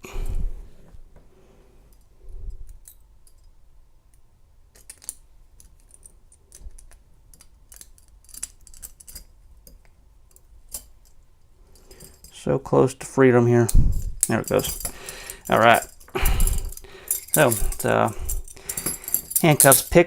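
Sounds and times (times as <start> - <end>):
metallic clicks in a lock: 4.7 - 10.9.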